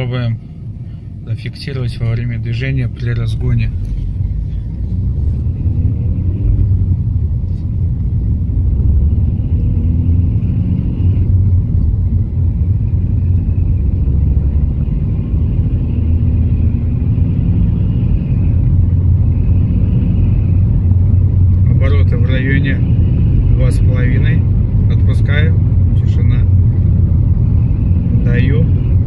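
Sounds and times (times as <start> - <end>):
car engine and road rumble: 0.0 - 29.0.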